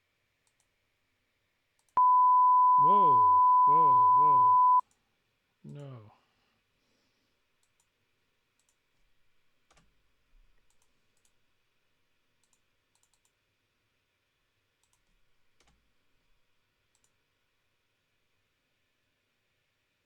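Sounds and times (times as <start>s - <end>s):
faint mouse clicks: 0.4s - 0.8s, 7.6s - 8.0s, 8.6s - 8.9s, 9.6s - 11.4s, 12.4s - 13.4s, 14.8s - 15.9s, 16.9s - 17.2s.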